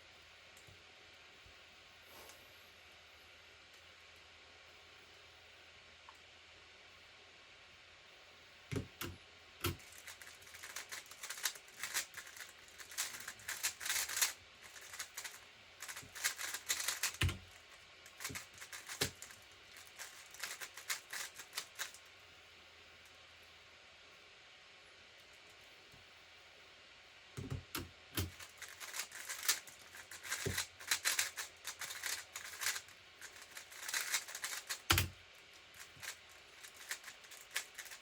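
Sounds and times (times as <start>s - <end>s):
puzzle cube turning clatter: 8.7s - 22.1s, 27.4s - 38.0s.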